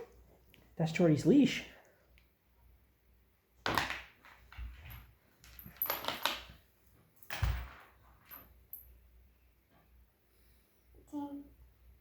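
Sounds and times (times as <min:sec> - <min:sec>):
thump: 0:07.3 - 0:07.9.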